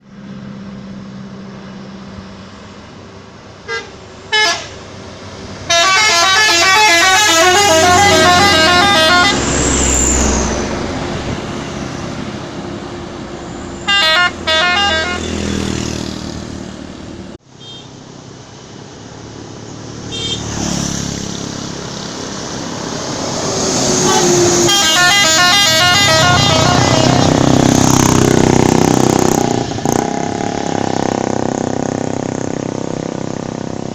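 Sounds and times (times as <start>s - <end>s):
bus engine rumble: 0.0s - 19.9s, 21.1s - 33.9s
multi-tone air horn melody: 3.7s - 4.8s, 5.7s - 9.6s, 13.8s - 15.4s, 23.9s - 27.5s.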